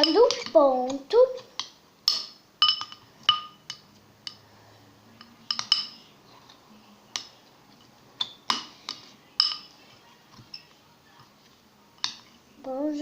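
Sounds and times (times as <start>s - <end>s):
utensil clinking against pot: 1.6s - 4.5s, 5.2s - 6.1s, 8.2s - 9.8s.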